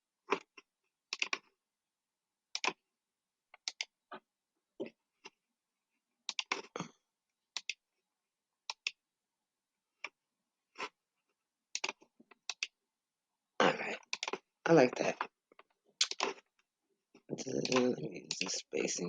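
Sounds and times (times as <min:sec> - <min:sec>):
mouse and keyboard clicking: 0:01.1 - 0:01.5, 0:02.6 - 0:02.8, 0:03.6 - 0:03.9, 0:06.3 - 0:06.6, 0:07.6 - 0:07.8, 0:08.7 - 0:09.0, 0:11.8 - 0:12.7, 0:14.0 - 0:14.4, 0:16.0 - 0:16.4, 0:17.4 - 0:18.6.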